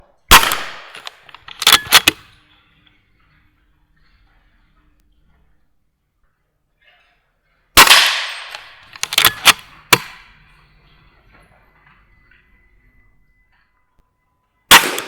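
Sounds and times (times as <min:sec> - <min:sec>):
air rifle shot: 0:00.3 - 0:02.2, 0:07.8 - 0:10.2, 0:14.7 - 0:15.0
rifle lever metallic clicks: 0:00.3 - 0:02.2, 0:07.8 - 0:10.2.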